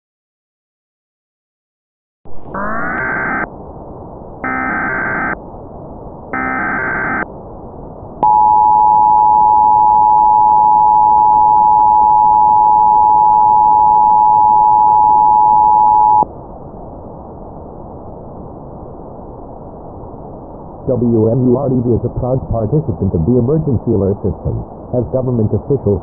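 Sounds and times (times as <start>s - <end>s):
data header tones: 2.3s - 3.5s, 4.4s - 5.4s, 6.4s - 7.2s, 8.2s - 16.2s
static hiss: 2.3s - 3.5s, 4.4s - 5.4s, 6.3s - 7.3s, 20.8s - 26.0s
two-tone attention signal: 4.4s - 5.4s, 6.4s - 7.2s, 8.2s - 16.2s.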